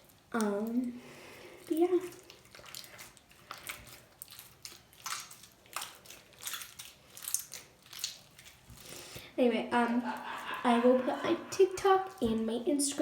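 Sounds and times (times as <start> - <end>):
slime squishing by hand: 1.6 - 9.2.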